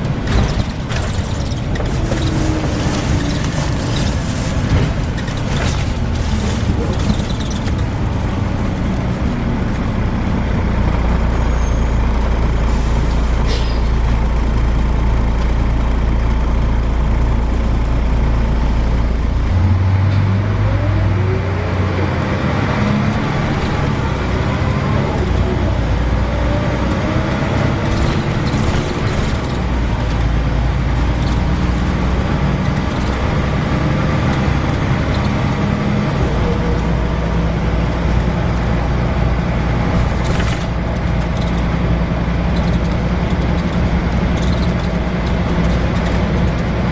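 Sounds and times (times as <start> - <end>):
bus engine running: 0.0 - 46.9.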